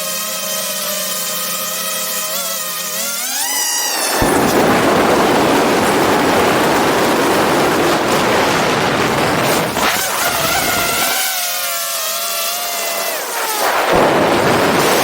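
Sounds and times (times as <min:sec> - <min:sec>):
drone motors whining: 0:01.1 - 0:15.0
wind buffeting microphone: 0:03.6 - 0:11.2, 0:13.5 - 0:15.0.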